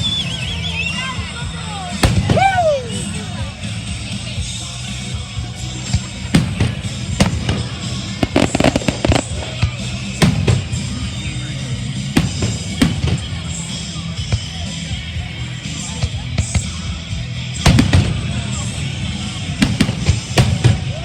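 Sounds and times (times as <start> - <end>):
background music: 0.0 - 21.0
fireworks bursting: 1.9 - 3.4, 5.8 - 14.5, 17.5 - 21.0.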